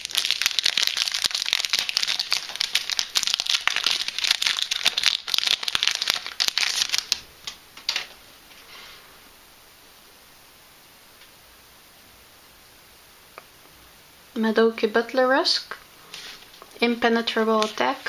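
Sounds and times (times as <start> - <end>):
foil wrapper crinkling: 0.0 - 8.0.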